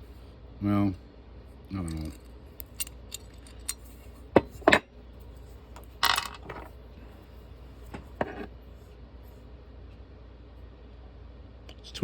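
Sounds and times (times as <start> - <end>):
metal parts rattling: 1.8 - 4.0, 5.8 - 6.7
metal parts clinking: 1.8 - 4.8, 5.8 - 6.7.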